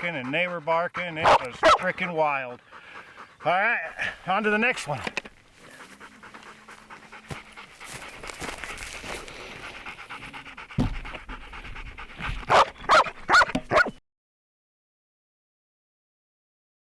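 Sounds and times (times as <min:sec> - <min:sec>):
dog panting: 0:00.0 - 0:13.9
dog crying: 0:12.5 - 0:14.0.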